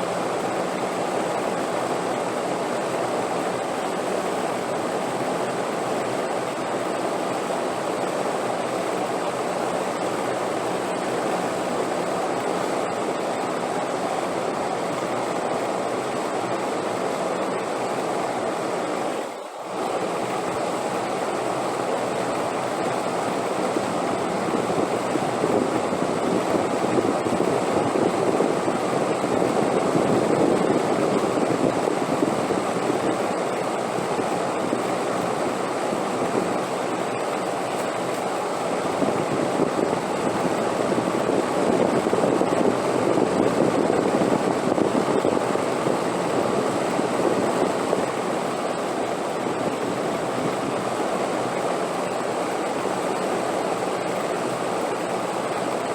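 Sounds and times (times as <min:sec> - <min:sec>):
rushing wind: 0:22.1 - 0:55.9.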